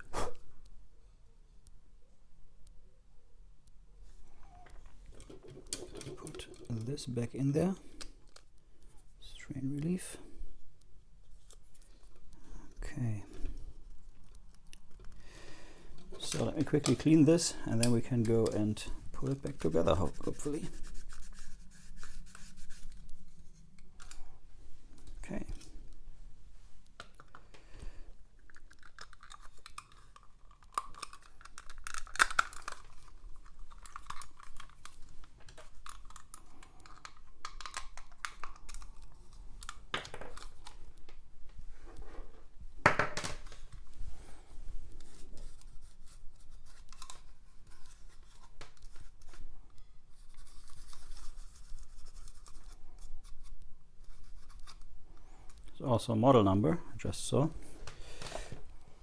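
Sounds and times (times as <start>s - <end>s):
scratching and rubbing plastic parts: 4.1s - 10.2s, 15.9s - 26.0s, 28.2s - 55.8s.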